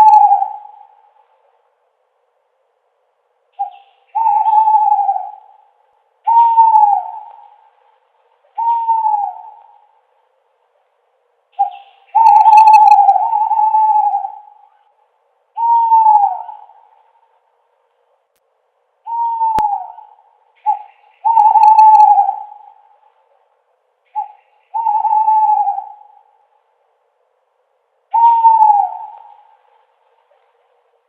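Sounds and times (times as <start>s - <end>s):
owl hooting: 0.0s - 1.6s, 3.5s - 10.1s, 11.5s - 17.4s, 19.0s - 26.8s, 28.1s - 31.0s.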